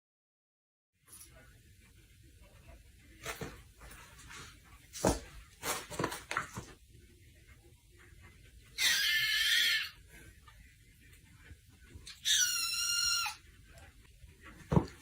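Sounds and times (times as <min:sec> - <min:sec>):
knocks and rustles: 0:03.2 - 0:06.8, 0:14.4 - 0:15.0
animal high-pitched wavering cry: 0:08.8 - 0:10.0, 0:12.1 - 0:13.4.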